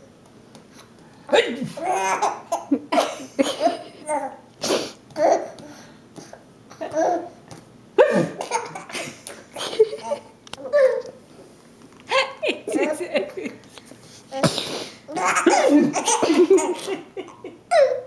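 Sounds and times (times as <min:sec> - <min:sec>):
people laughing: 0:12.1 - 0:13.6, 0:15.4 - 0:17.6.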